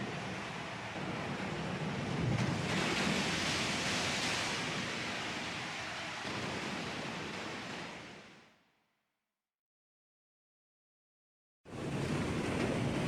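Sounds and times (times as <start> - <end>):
sea waves washing ashore: 0.0 - 8.4, 11.7 - 13.0.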